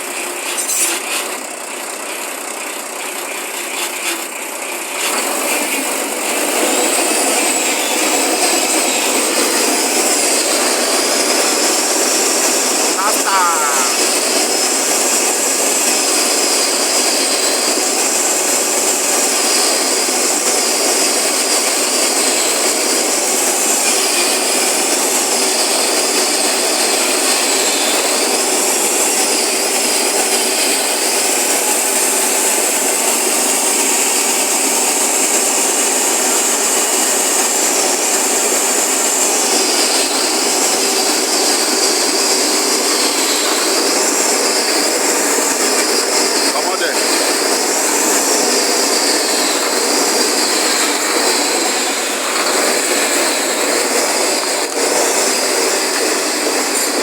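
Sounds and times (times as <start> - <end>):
truck engine running: 0.0 - 57.0
high whine: 6.2 - 18.1.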